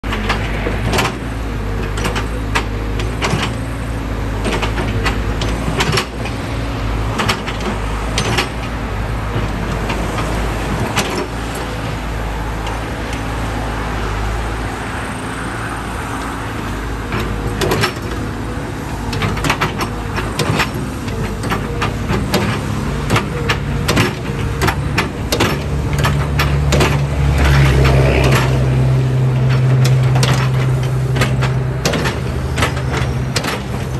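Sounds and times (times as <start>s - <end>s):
excavator diesel engine running: 0.0s - 33.9s
metallic clanks and knocks: 17.0s - 18.3s, 19.0s - 33.9s.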